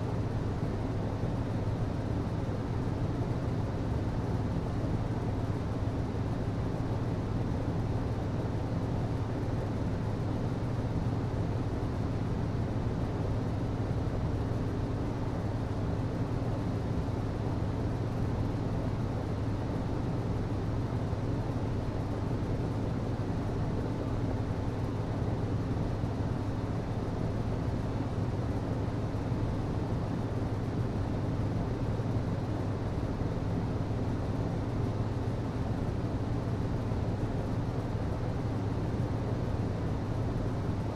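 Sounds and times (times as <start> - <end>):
ventilation system humming: 0.0 - 40.9.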